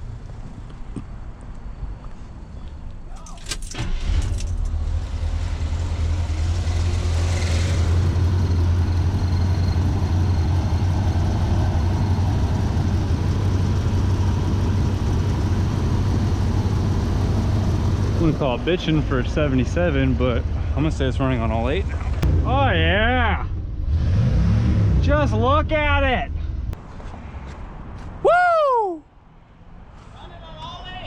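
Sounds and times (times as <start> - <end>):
engine starting and idling: 3.5 - 10.0.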